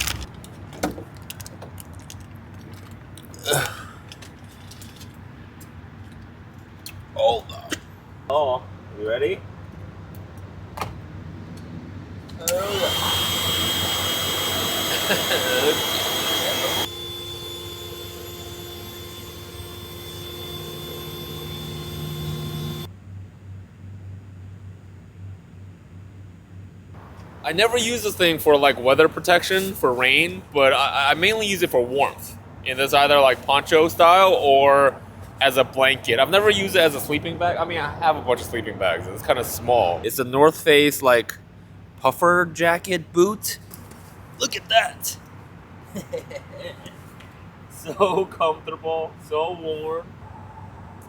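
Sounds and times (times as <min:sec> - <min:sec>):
mechanical whirring hum: 0:12.1 - 0:26.2.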